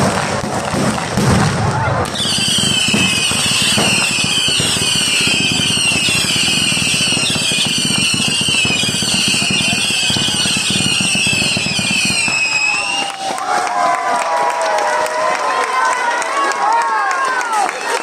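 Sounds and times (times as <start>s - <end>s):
fireworks whistling: 0.0s - 13.4s
fireworks crackling: 0.0s - 13.6s.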